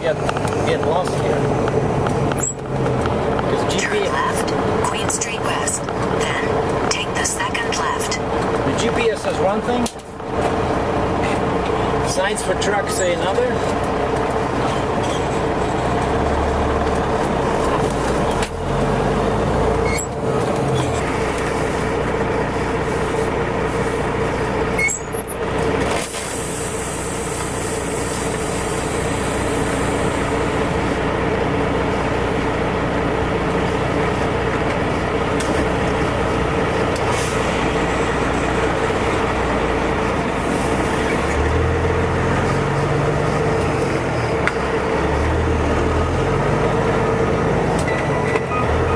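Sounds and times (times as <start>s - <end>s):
loud diesel truck engine running: 0.0s - 48.9s.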